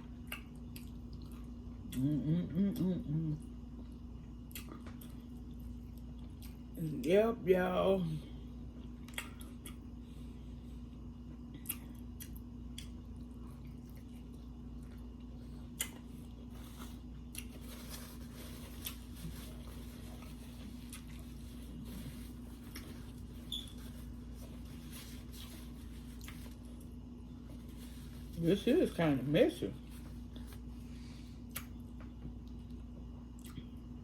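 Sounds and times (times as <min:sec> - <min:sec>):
wet chewing: 0:11.6 - 0:17.7, 0:18.5 - 0:23.6.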